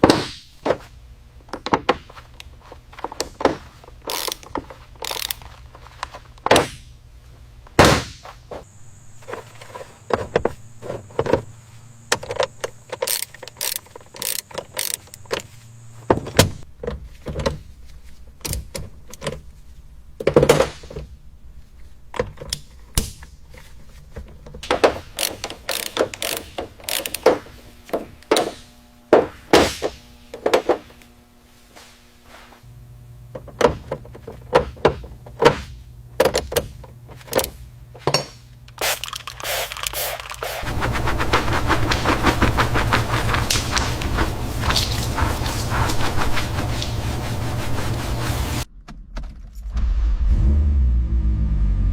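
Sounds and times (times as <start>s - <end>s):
tools knocking and clicking: 1.5s - 6.8s, 12.1s - 15.5s, 24.2s - 28.6s, 33.3s - 40.7s
low steady hum: 2.2s - 48.7s.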